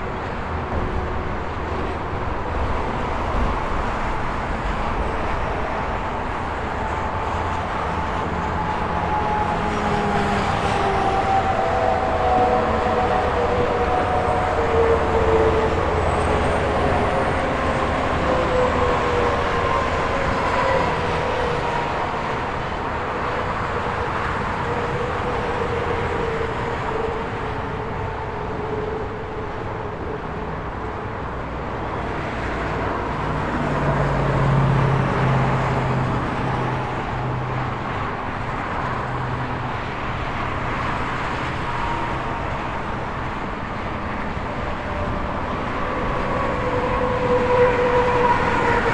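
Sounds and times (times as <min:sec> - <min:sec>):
highway traffic rushing: 0:00.0 - 0:48.9.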